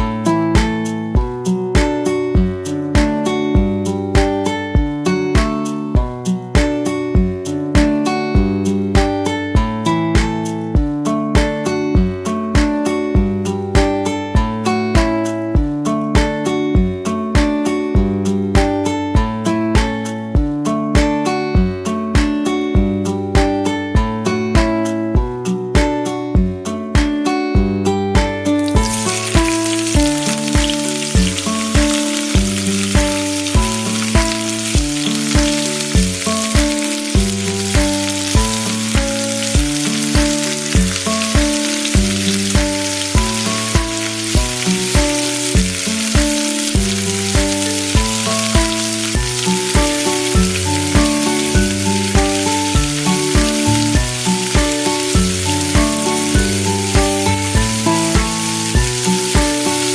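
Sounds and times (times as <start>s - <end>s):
music with steady beat: 0.0s - 59.9s
food sizzling in a pan: 28.6s - 59.9s.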